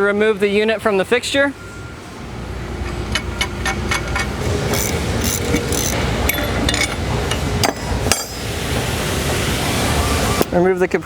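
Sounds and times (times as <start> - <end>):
metal clanks and clinks: 2.8 - 8.5.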